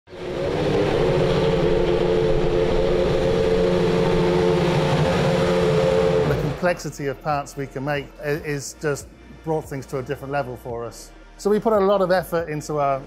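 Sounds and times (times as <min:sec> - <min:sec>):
racing car engine at high revs: 0:00.1 - 0:06.7.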